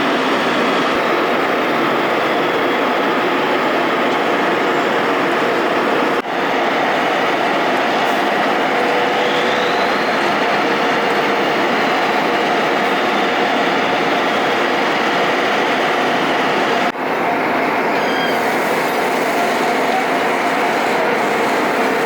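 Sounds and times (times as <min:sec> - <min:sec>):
vehicle road noise rush: 0:00.0 - 0:22.0.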